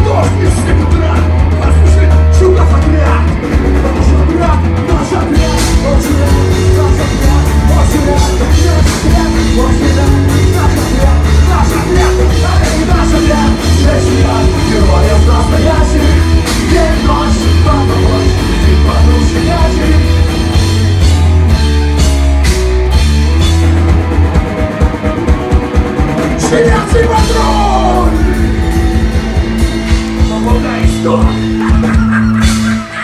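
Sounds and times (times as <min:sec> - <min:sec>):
pounding drum kit: 0:00.0 - 0:33.0
punk rock band: 0:00.0 - 0:33.0
shouted vocals: 0:26.4 - 0:29.4.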